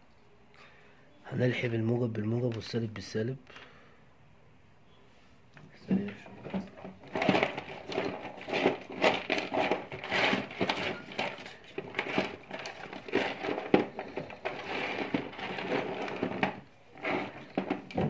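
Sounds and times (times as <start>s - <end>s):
hands handling small parts: 5.6s - 18.0s.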